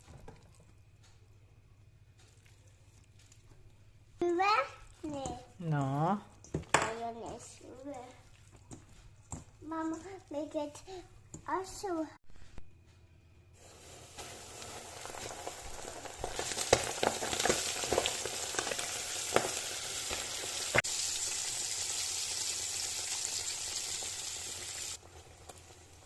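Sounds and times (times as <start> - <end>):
chicken skin sizzling in fat: 13.6 - 26.0
fat popping and crackling: 14.8 - 20.8.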